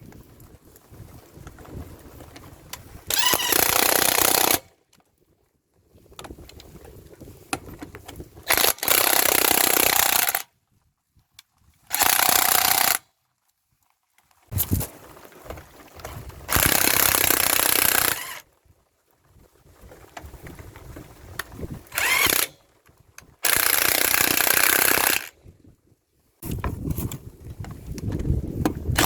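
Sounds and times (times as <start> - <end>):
impact wrench hammering: 23.5 - 25.3.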